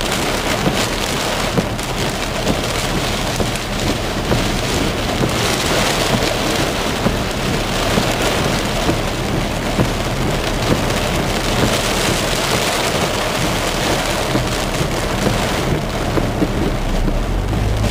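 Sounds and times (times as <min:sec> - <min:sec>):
heavy rain falling: 0:00.0 - 0:17.9.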